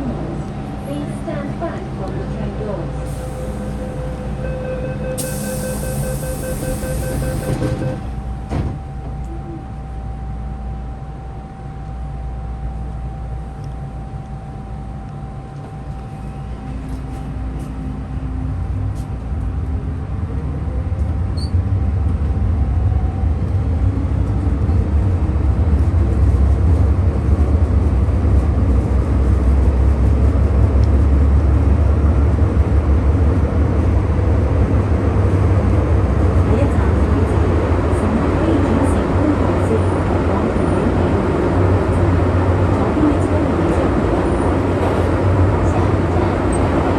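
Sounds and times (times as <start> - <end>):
electric train motors whining: 5.2 - 8.2
wheel and track rumble: 15.4 - 46.9.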